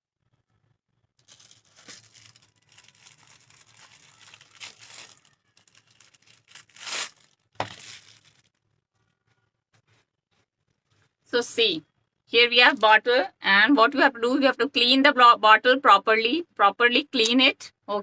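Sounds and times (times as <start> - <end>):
material rustling and crinkling: 1.2 - 11.2.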